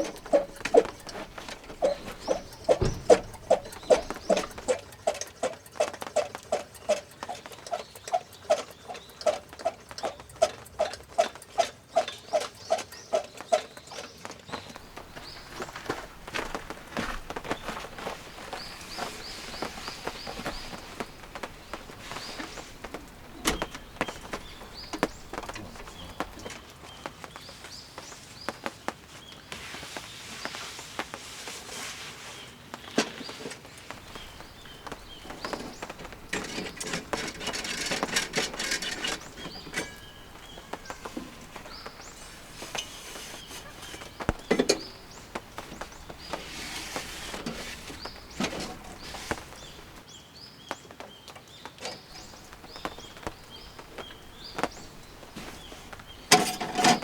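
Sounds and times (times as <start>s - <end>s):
sharp taps and knocks: 0.0s - 29.0s, 32.8s - 50.1s
birds chirping: 0.0s - 57.0s
steady faint hiss: 14.8s - 50.2s.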